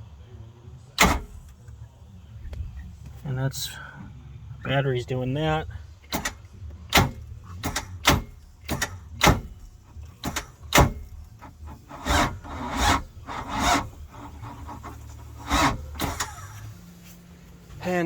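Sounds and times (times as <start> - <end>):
starter motor clicking: 1.0 - 1.6, 6.0 - 16.8
starter motor rasping: 6.0 - 16.8.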